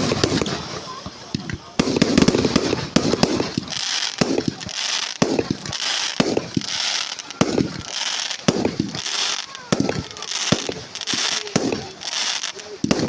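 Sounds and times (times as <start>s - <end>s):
fireworks bursting with crackling: 0.0s - 13.0s.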